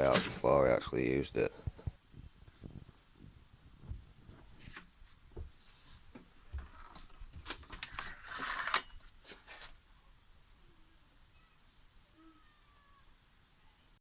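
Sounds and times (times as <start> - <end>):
scraping rustle: 2.5 - 9.8.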